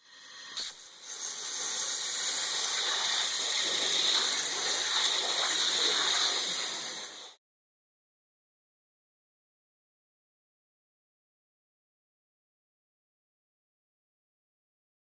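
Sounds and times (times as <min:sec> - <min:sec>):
waterjet cutting machine hissing: 0:00.0 - 0:07.4.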